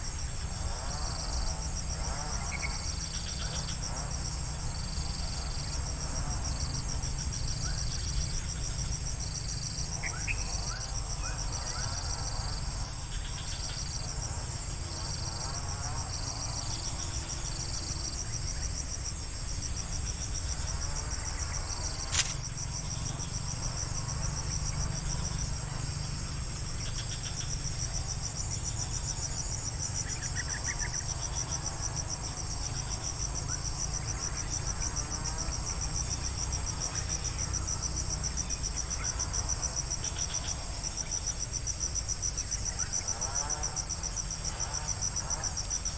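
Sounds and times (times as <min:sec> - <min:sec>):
insects chorus: 0:00.0 - 0:45.9
sharp click: 0:21.9 - 0:22.6.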